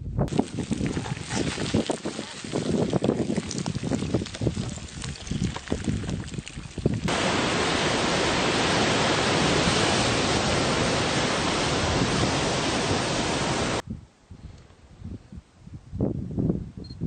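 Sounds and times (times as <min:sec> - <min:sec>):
loud even rushing noise: 0:07.1 - 0:13.8.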